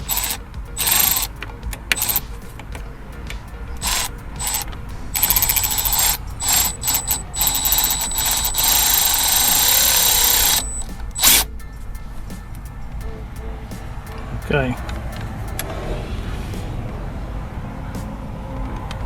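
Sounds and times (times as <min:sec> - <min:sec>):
power driver whining: 0:00.0 - 0:02.7, 0:03.7 - 0:11.5.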